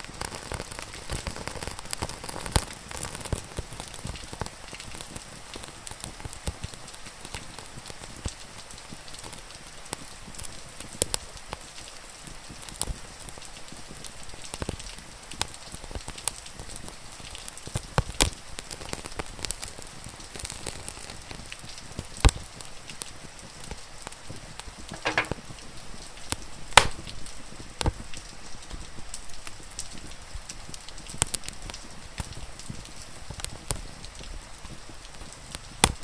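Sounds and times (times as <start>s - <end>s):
rain hissing: 0.0s - 36.0s
wood fire crackling and popping: 0.0s - 36.0s.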